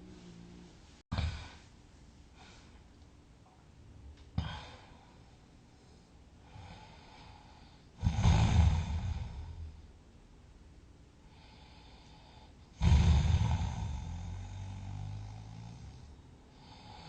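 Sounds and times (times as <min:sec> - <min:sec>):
sharp snort: 0:08.0 - 0:09.5, 0:12.8 - 0:15.9
person snoring: 0:08.0 - 0:09.8, 0:11.4 - 0:17.0.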